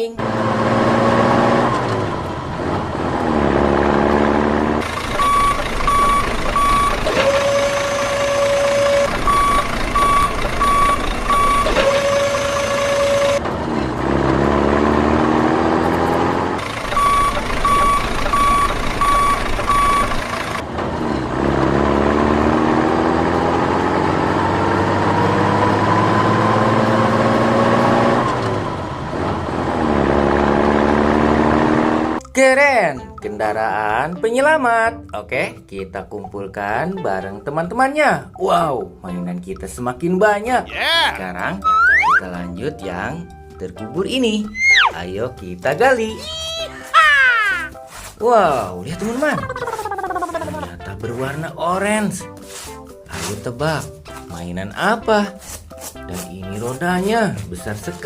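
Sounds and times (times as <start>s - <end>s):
truck engine revving: 0.0s - 32.2s
reversing beeps: 5.2s - 13.4s, 16.9s - 20.2s
horn-like tones: 7.1s - 9.4s, 10.8s - 13.4s.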